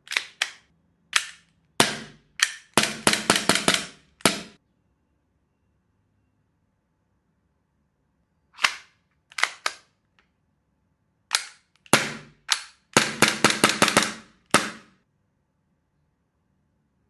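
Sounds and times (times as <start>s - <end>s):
airsoft pistol shots: 1.2s - 4.6s, 11.9s - 14.9s.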